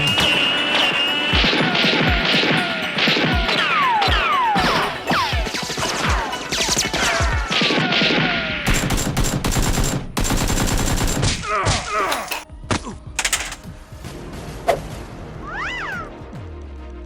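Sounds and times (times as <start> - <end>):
rapid gunshots: 5.5 - 11.4.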